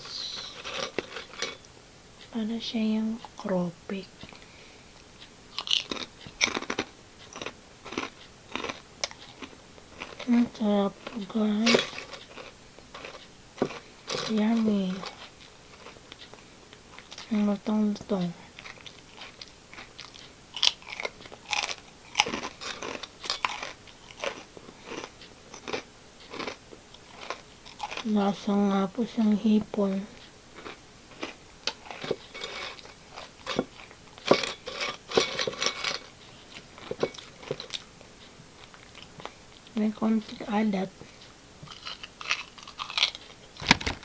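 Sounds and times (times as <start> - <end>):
crunching rice cracker bites: 0.5 - 1.6, 5.5 - 17.3, 18.6 - 28.1, 30.1 - 37.9, 41.6 - 44.0.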